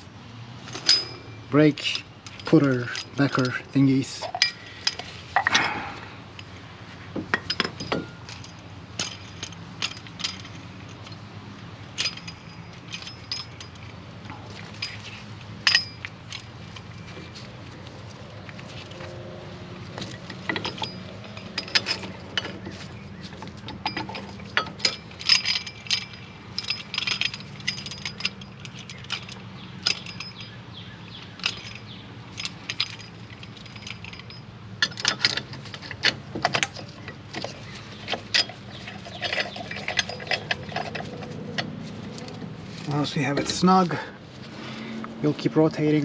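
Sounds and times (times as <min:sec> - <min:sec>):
metallic tool clicks and clinks: 0:00.8 - 0:05.8, 0:23.6 - 0:30.6.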